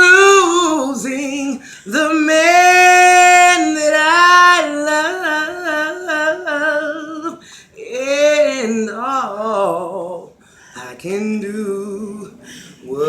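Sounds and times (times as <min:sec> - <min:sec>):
person singing unaccompanied: 0:00.0 - 0:13.0
person breathing: 0:01.6 - 0:01.9, 0:07.4 - 0:07.8, 0:10.4 - 0:10.8, 0:12.4 - 0:12.9.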